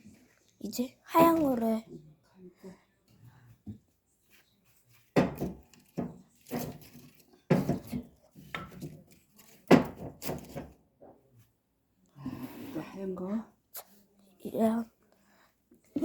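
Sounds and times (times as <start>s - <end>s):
firewood knocking in fireplace: 5.2s - 10.8s.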